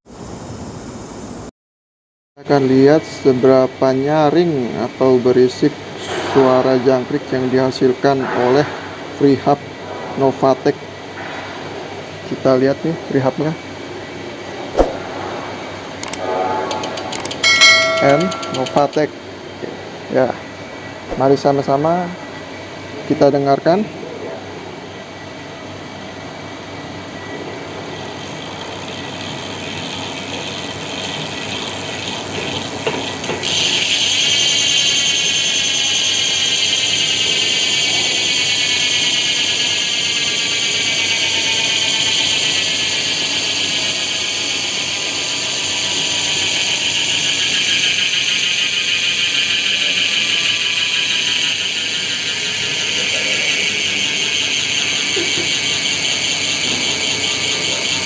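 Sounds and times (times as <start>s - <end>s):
bicycle freehub clicking buzz: 15.8s - 19.1s, 26.0s - 58.0s.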